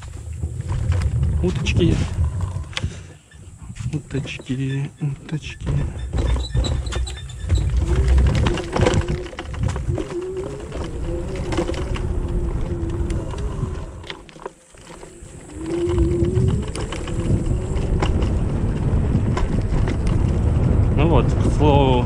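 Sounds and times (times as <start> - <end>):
rattles and knocks over bumps: 0.0 - 22.0
wind rumble on microphone: 0.0 - 22.0
electric scooter motor whine: 7.2 - 20.9.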